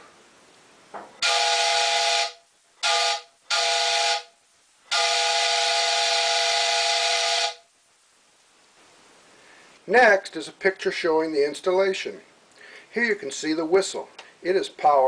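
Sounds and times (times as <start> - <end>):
train whistle blasts: 1.2 - 7.7.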